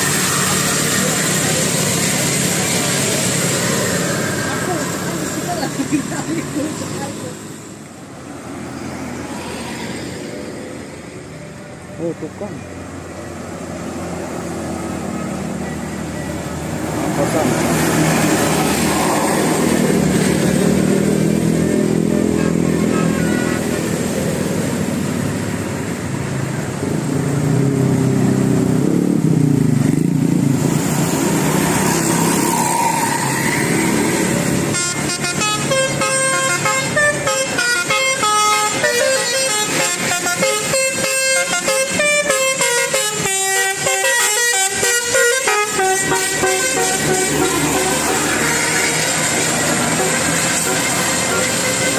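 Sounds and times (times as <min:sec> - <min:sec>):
vehicle engines running: 0:00.0 - 0:51.9
bus multi-tone air horn tune: 0:34.6 - 0:51.9.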